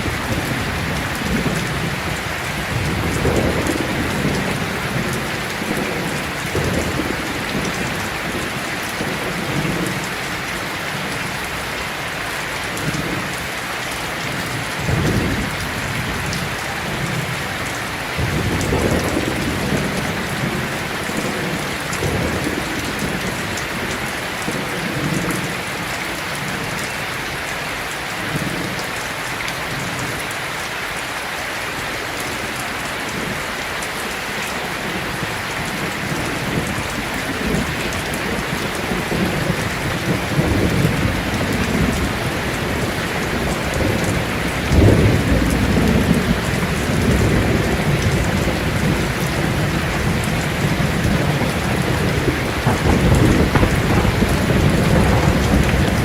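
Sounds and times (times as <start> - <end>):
thunder rumbling: 0.0 - 11.4, 14.3 - 25.8, 34.8 - 56.0
heavy rain: 0.0 - 56.0.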